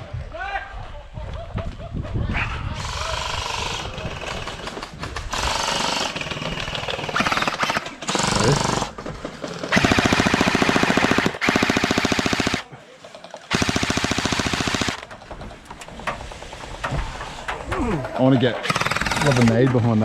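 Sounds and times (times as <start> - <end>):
gel blasters firing fast clicks: 5.2 - 9.0, 9.7 - 12.6, 13.5 - 15.1, 18.6 - 19.6.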